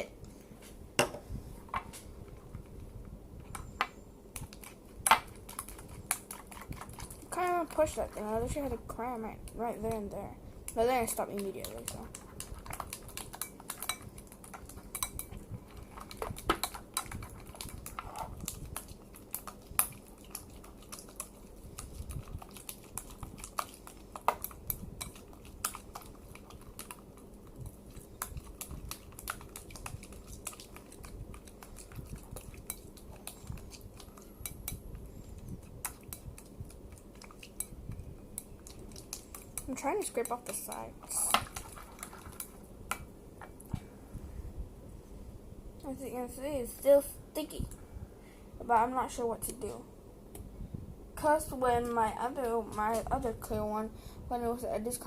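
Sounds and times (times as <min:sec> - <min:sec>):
utensil stirring thick slime: 0:04.3 - 0:42.6.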